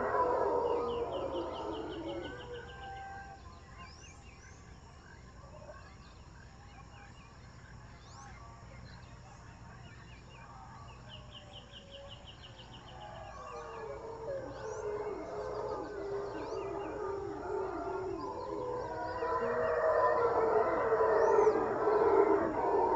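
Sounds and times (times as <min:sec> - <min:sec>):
howler monkeys howling: 0:00.0 - 0:04.4, 0:10.7 - 0:22.9
steady background hum: 0:00.0 - 0:22.9
birds calling: 0:11.8 - 0:22.9.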